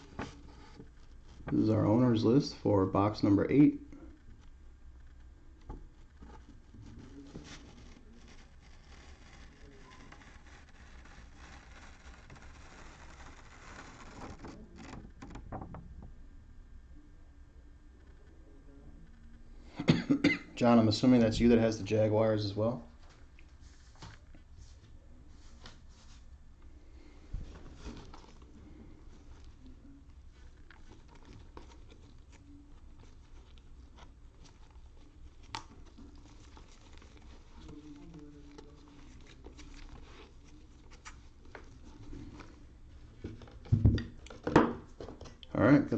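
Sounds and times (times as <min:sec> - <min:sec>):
rustling handling noise: 0:00.0 - 0:16.1, 0:20.6 - 0:45.9.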